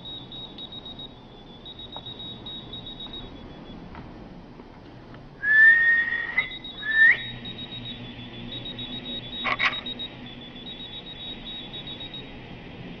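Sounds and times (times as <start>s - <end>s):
key finder beeping: 0.0s - 3.8s, 6.3s - 12.4s
person whistling: 5.4s - 7.4s.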